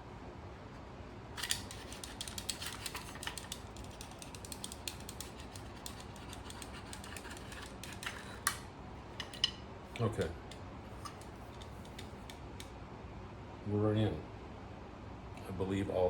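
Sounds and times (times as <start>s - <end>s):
small metal clicks and scrapes: 1.4s - 12.7s.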